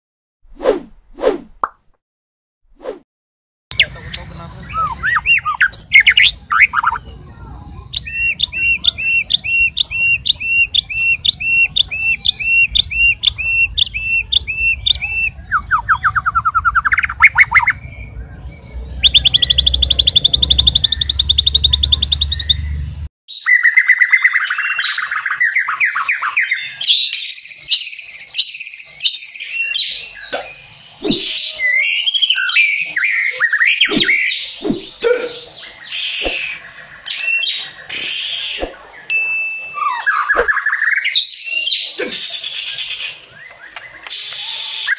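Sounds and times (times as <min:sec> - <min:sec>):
bird whistling and trilling: 0:04.7 - 0:07.0, 0:08.0 - 0:17.9, 0:19.0 - 0:44.9
short clicking bird notes: 0:32.3 - 0:32.6, 0:36.2 - 0:38.8.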